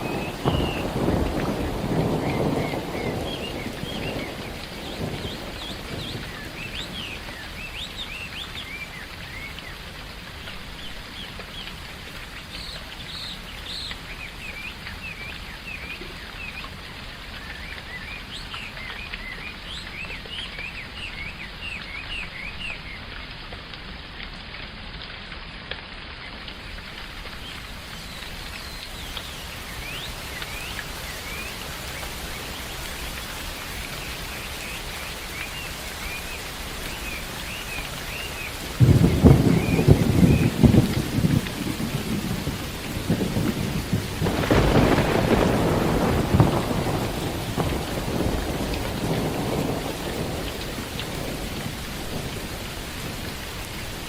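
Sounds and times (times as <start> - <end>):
steady rain: 0.0 - 54.0
birds chirping: 34.0 - 41.2.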